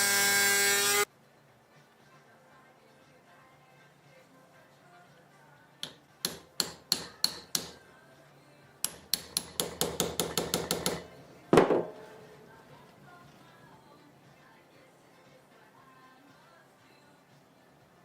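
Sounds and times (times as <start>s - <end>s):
small hammer tapping: 5.8s - 7.8s, 8.8s - 11.0s.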